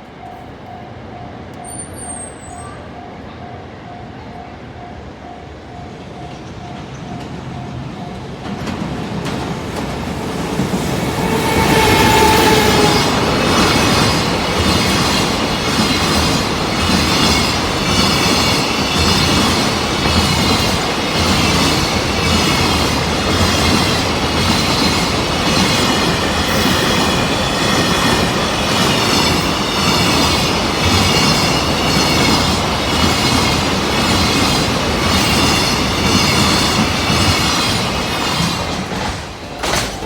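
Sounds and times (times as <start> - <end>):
wheels rushing on rail: 5.4 - 40.0
train car clatter: 5.9 - 40.0
high-pitched wheel squeal: 10.8 - 14.3.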